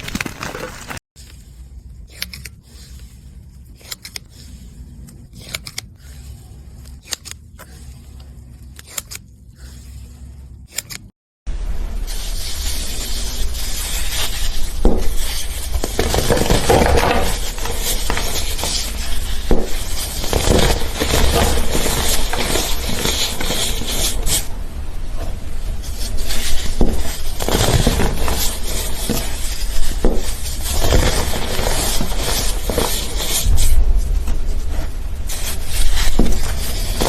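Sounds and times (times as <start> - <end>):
clicks and crackles: 0.0 - 1.0
slime squishing: 12.1 - 24.6, 25.3 - 37.0.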